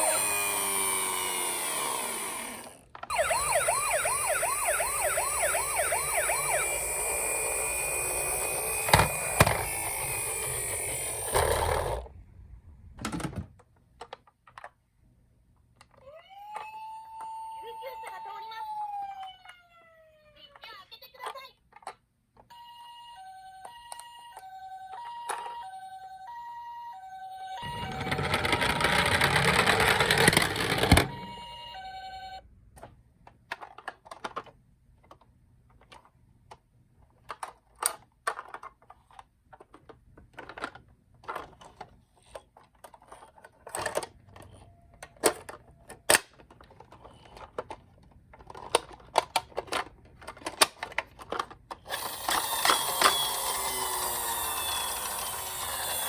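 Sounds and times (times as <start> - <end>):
toy siren hi-lo: 0.0 - 11.6, 16.1 - 20.6, 22.5 - 29.1, 31.0 - 32.4, 51.9 - 56.0.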